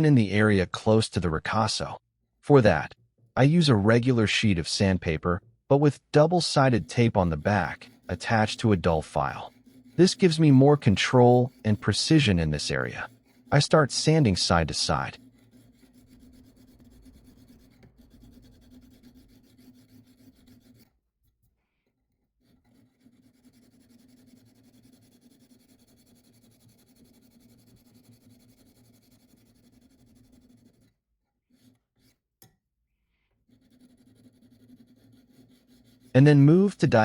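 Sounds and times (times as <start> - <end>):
sandpaper rubbing on steel blade: 6.4 - 20.9, 22.4 - 30.9, 33.5 - 37.0.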